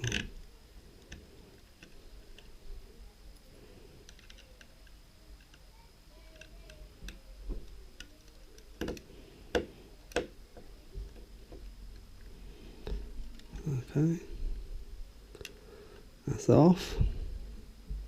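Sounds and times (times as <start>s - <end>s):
small parts clicking and tapping: 3.3s - 13.7s.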